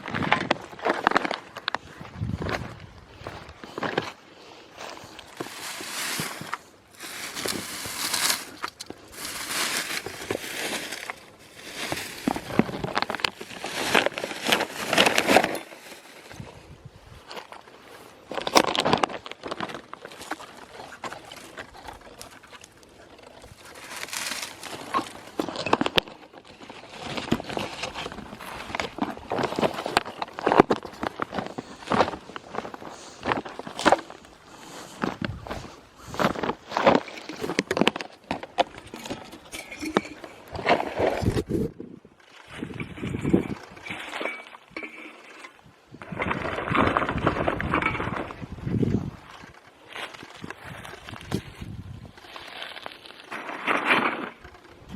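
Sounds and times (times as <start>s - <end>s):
crunching footsteps: 0.0s - 54.9s
litter crinkling: 5.0s - 16.4s, 18.3s - 41.6s
plastic trash bag rustling: 5.0s - 16.4s, 23.4s - 34.2s.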